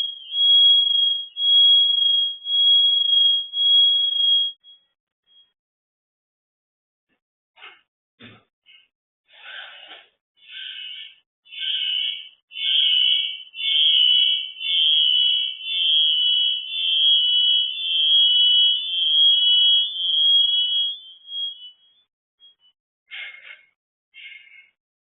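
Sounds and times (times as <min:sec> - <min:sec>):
electronic alarm beeping: 0:00.0 - 0:05.6, 0:10.5 - 0:22.8.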